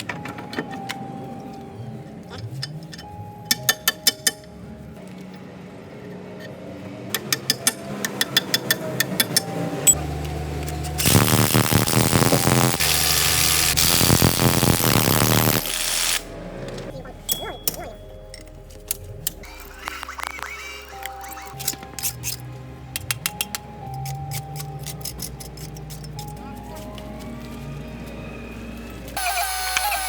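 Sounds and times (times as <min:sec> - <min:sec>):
power tool running: 0:10.8 - 0:16.3, 0:29.2 - 0:30.0.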